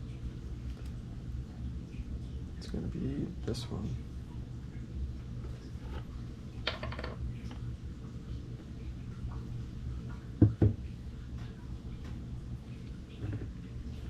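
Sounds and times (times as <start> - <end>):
steady low hum: 0.0 - 14.0
sharp knocks on workbench: 10.4 - 10.8.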